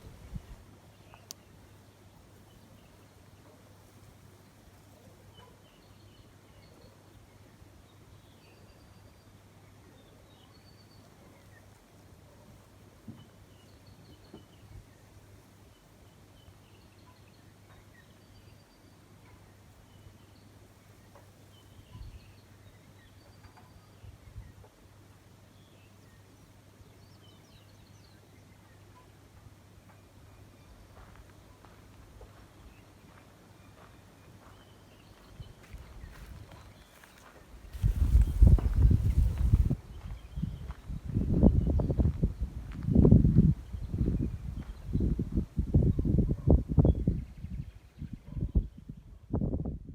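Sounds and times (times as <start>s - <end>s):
faint bird chirps: 16.4s - 24.6s.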